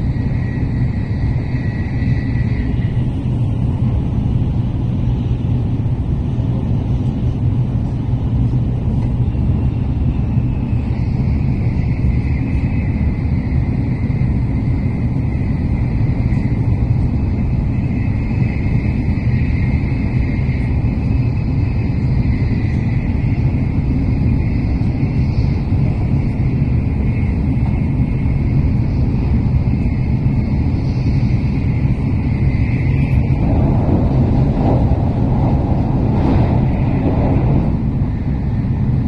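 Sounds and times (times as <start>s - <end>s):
train running rumble: 0.0s - 39.0s.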